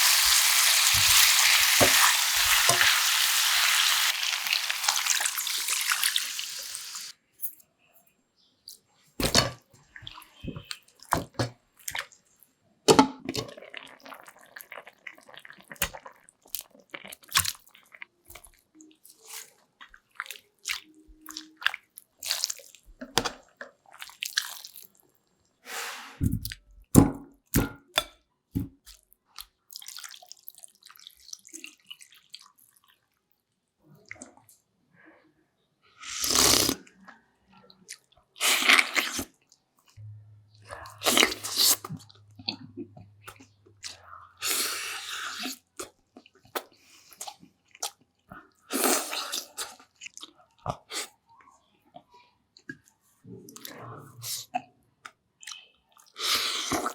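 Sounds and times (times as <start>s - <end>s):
water running bursts: 0.0s - 7.1s.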